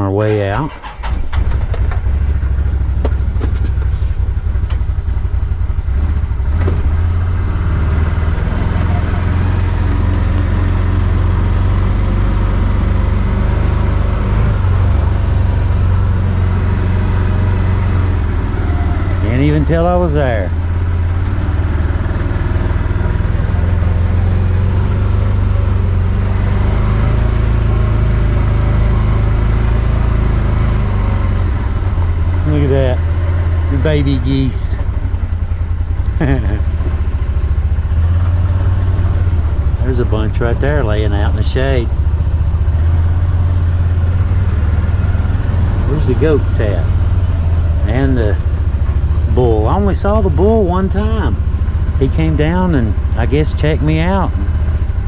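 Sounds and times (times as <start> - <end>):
road noise: 0.0 - 55.0
vehicle engine pulling away: 0.0 - 55.0.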